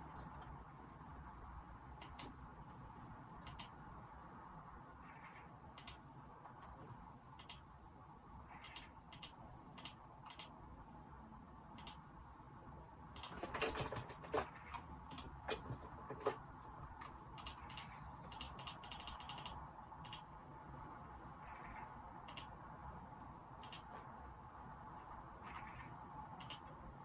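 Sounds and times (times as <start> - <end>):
computer keyboard typing: 13.2 - 20.3, 22.2 - 22.6, 23.6 - 24.0, 26.4 - 26.7.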